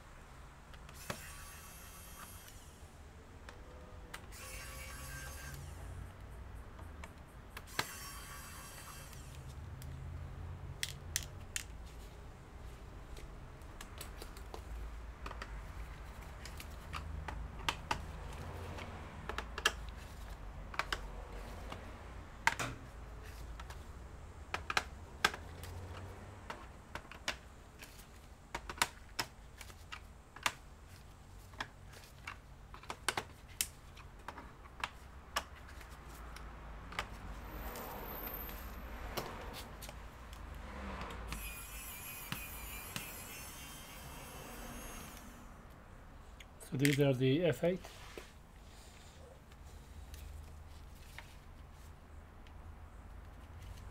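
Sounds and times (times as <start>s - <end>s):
laptop parts clicking and tapping: 6.2s - 8.0s, 10.7s - 12.1s, 13.1s - 37.6s, 38.3s - 41.4s, 42.3s - 43.2s, 46.4s - 47.1s.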